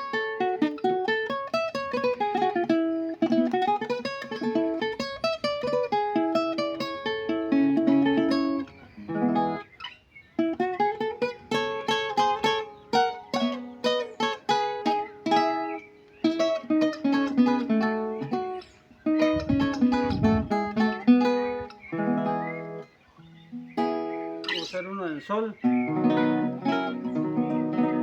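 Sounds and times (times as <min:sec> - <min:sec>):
small guitar plucked solo: 0:25.7 - 0:28.0.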